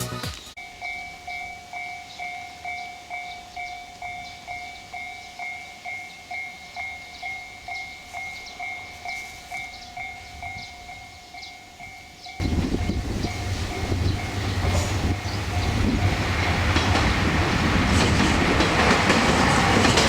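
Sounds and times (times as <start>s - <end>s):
level-crossing warning bell: 0.6s - 20.0s.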